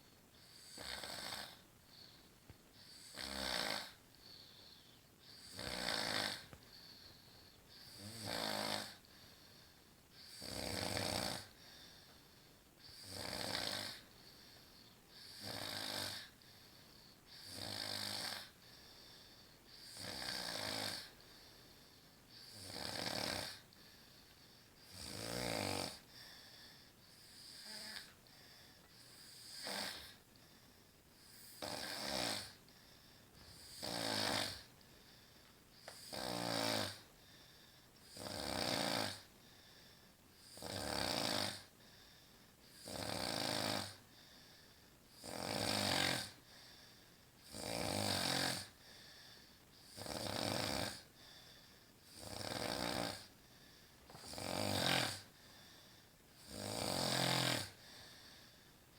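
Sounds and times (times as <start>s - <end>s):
woman snoring: 0.4s - 1.6s, 2.8s - 4.6s, 5.3s - 7.0s, 7.7s - 9.0s, 10.2s - 11.6s, 12.8s - 14.1s, 15.2s - 16.4s, 17.3s - 18.6s, 19.8s - 21.1s, 22.4s - 23.6s, 24.8s - 26.1s, 27.2s - 28.2s, 29.0s - 30.2s, 31.2s - 32.6s, 33.4s - 34.7s, 35.9s - 37.1s, 38.1s - 39.3s, 40.4s - 41.7s, 42.8s - 44.0s, 45.2s - 46.4s, 47.4s - 48.8s, 49.8s - 51.1s, 52.0s - 53.3s, 54.1s - 55.3s, 56.4s - 57.8s.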